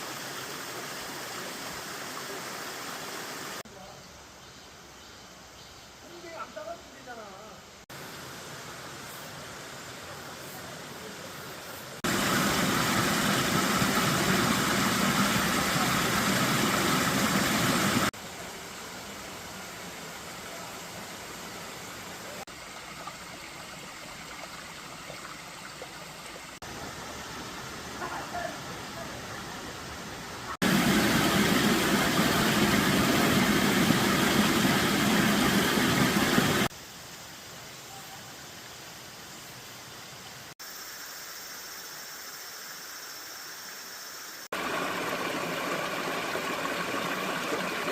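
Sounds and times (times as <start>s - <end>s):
stream rushing: 0.0s - 3.6s, 7.9s - 36.8s, 44.5s - 47.9s.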